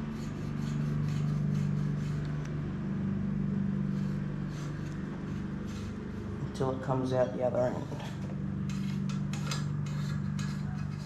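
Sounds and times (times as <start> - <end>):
low drone: 0.0 - 11.0
cable ticking and scraping in frame: 7.2 - 11.0.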